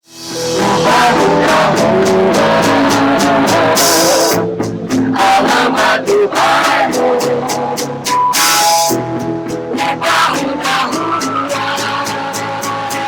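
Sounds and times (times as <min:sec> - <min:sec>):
drum kit with cymbals: 0:00.0 - 0:05.1, 0:06.4 - 0:09.6
person singing: 0:00.1 - 0:09.0, 0:09.7 - 0:13.0
guitars: 0:00.1 - 0:13.0.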